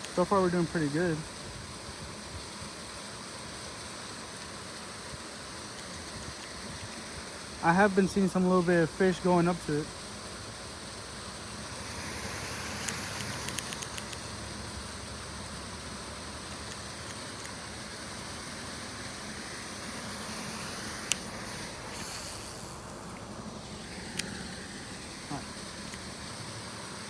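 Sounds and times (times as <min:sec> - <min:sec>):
outdoor background noise: 0:00.0 - 0:27.0
light clicks: 0:12.5 - 0:14.3
sharp click: 0:12.6 - 0:14.3.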